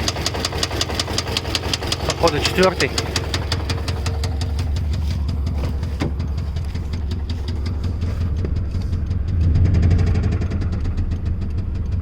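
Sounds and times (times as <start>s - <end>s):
engine idling with knocking: 0.0s - 12.0s.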